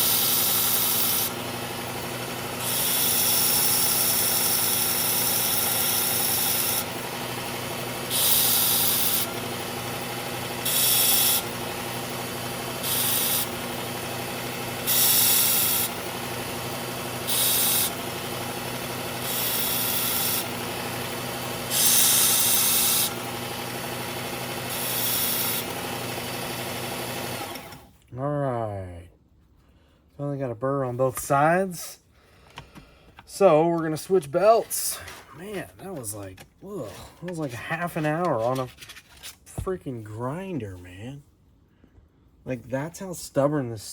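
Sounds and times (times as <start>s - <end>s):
belt grinder humming: 0.0s - 27.9s
knife blade hissing on grinder belt: 10.6s - 11.5s, 12.8s - 13.6s, 14.8s - 16.0s, 17.3s - 17.9s, 19.2s - 20.6s, 21.7s - 23.2s.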